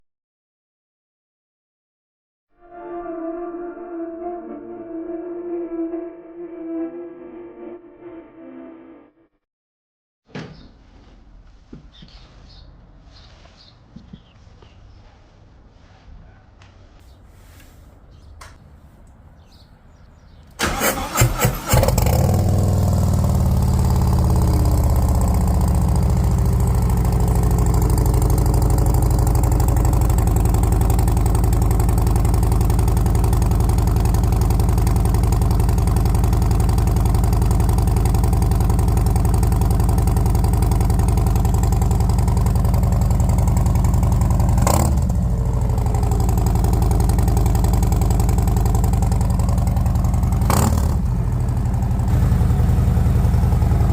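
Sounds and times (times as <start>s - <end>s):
motorcycle engine starting and idling: 20.5s - 53.9s.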